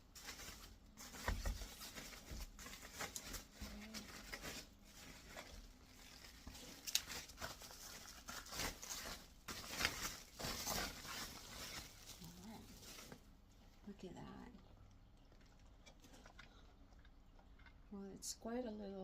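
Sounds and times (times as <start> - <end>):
packaging rustling and crinkling: 0.0 - 13.5.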